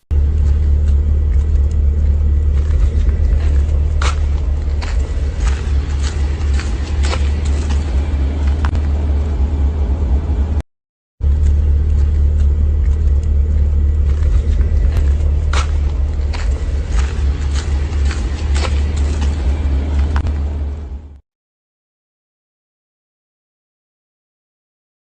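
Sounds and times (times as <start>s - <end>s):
car rumbling on the move: 0.0s - 10.6s, 11.2s - 21.2s
faint clicks and rattles: 0.1s - 9.0s, 11.2s - 20.4s.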